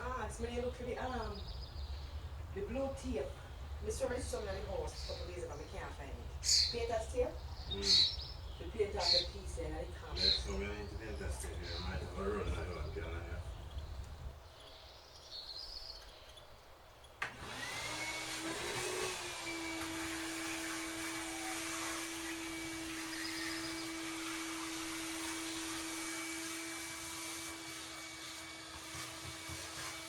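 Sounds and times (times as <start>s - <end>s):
vacuum blower motor whine: 17.2s - 30.0s.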